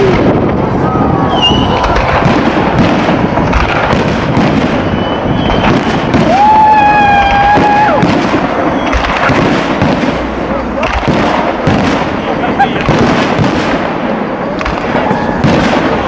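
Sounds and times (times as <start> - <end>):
fireworks crackling and booming: 0.0 - 16.0
high firework whistle: 0.8 - 2.2, 4.4 - 9.3.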